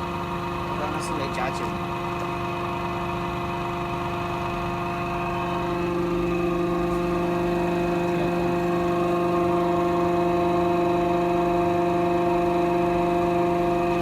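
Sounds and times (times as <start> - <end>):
electric motor whining: 3.8 - 14.0.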